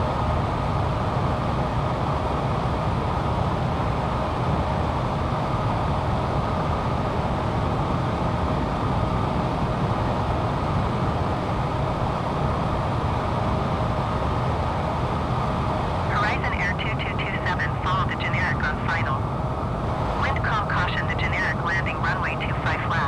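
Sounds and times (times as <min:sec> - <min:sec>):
jet aircraft rush: 0:05.5 - 0:23.0.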